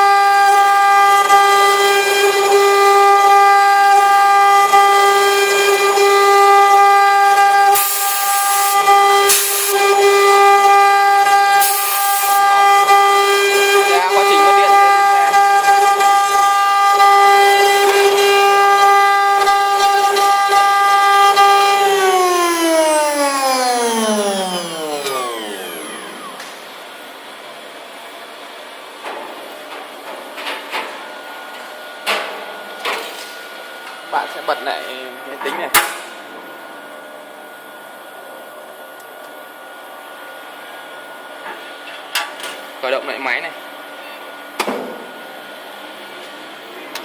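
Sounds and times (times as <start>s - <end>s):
spindle motor whining: 0.0s - 27.4s
cooling fans whirring: 0.0s - 47.0s
faint high whine: 21.8s - 27.3s.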